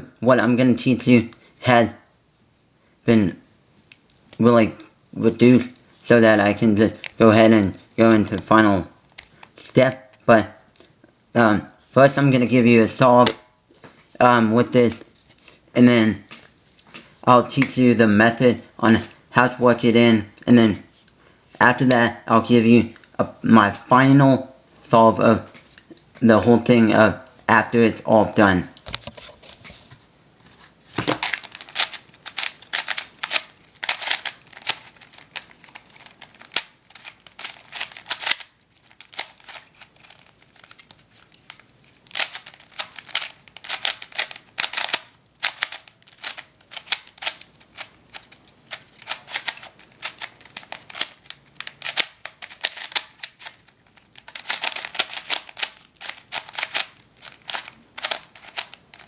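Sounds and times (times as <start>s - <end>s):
plastic puzzle cube clicking: 31.2s - 59.0s.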